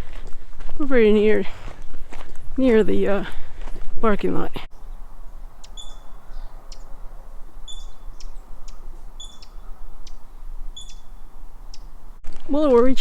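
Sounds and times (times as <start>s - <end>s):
small bird chirping: 4.8s - 12.2s.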